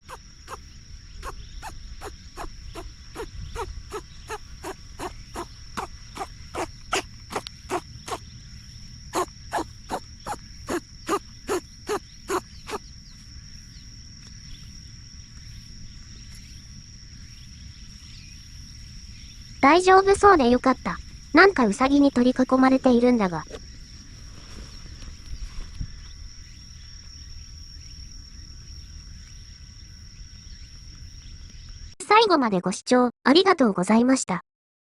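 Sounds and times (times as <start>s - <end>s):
rabbit sneezing: 1.2s - 8.2s, 9.1s - 12.8s.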